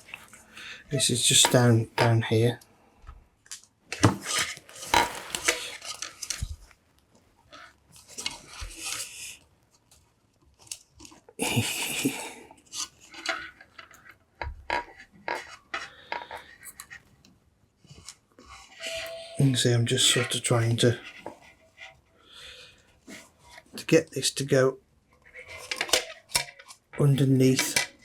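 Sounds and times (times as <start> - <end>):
fingers handling wire: 3.5 - 6.7.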